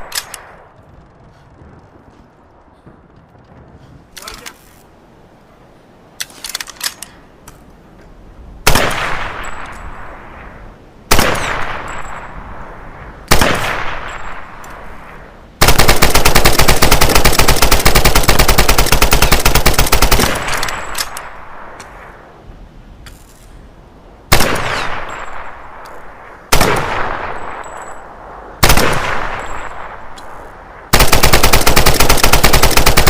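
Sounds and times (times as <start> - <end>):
submachine gun firing: 15.6 - 21.0, 28.6 - 29.7, 30.9 - 33.0.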